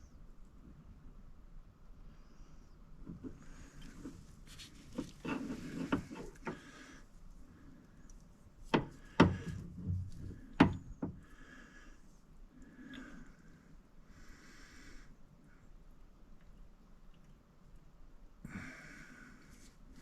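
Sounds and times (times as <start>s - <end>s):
rubbing and scraping: 3.1s - 6.6s, 8.6s - 10.8s
sharp knocks: 8.7s - 11.2s.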